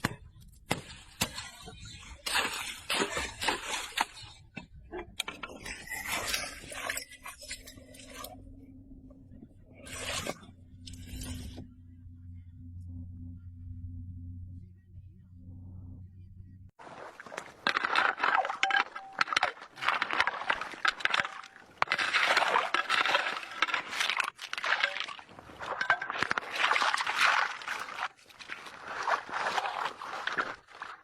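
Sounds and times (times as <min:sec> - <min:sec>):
snow and ice crunching: 0:16.8 - 0:31.0.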